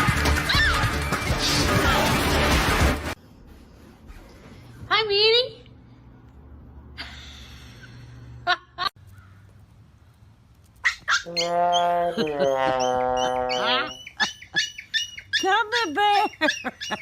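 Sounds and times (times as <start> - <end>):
animal long wavering call: 11.3 - 14.0.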